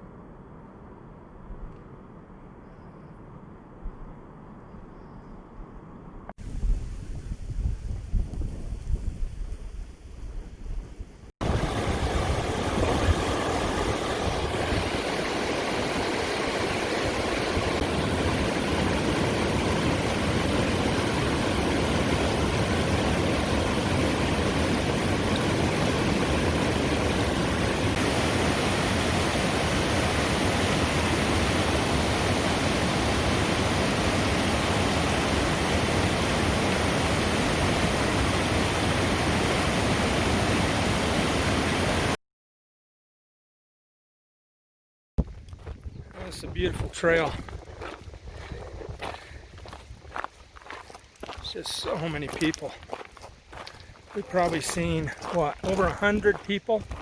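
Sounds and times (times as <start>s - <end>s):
mountain stream rushing: 11.4s - 42.2s, 49.1s - 57.0s.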